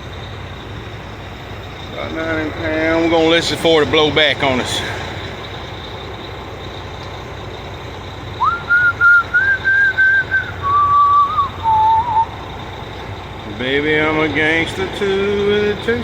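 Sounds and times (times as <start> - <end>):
truck engine idling: 0.0 - 16.0
person whistling a tune: 8.4 - 12.4.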